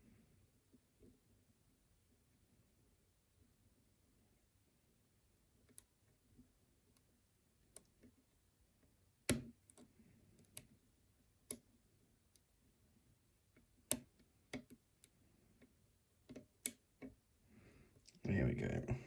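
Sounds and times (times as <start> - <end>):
lock pick clicking on pins: 9.3 - 10.7, 13.9 - 17.2.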